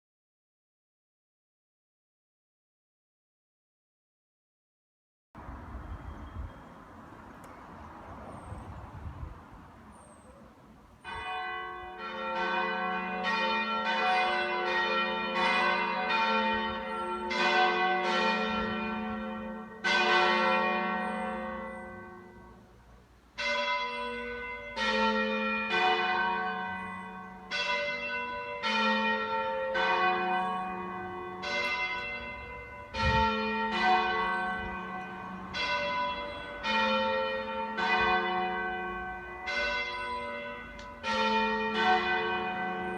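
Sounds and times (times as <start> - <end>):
church bells ringing: 10.4 - 42.9.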